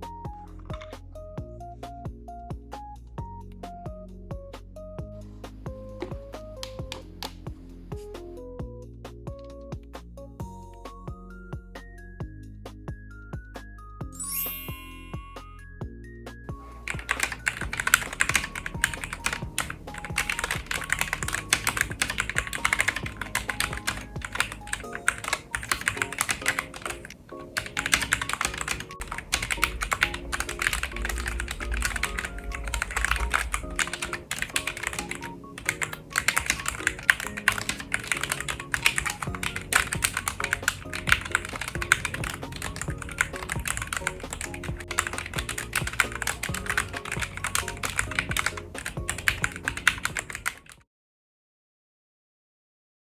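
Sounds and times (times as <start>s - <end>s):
mechanical keyboard typing: 5.9s - 7.4s, 16.6s - 50.8s.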